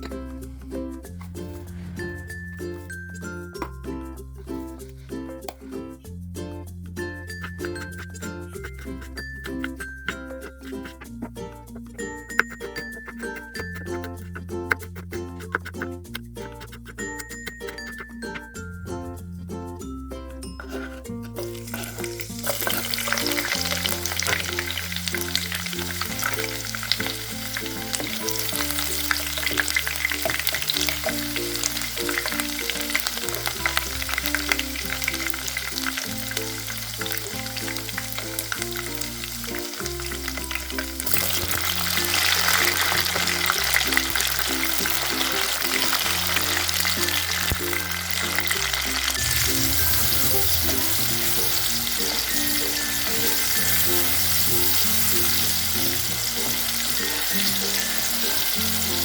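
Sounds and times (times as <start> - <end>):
background music: 0.0 - 59.0
food sizzling in hot oil: 20.8 - 59.0.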